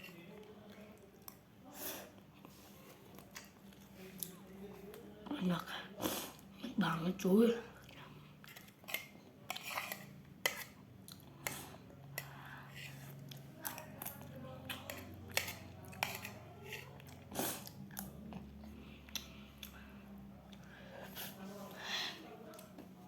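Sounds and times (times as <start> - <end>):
person chewing food: 7.8 - 21.4.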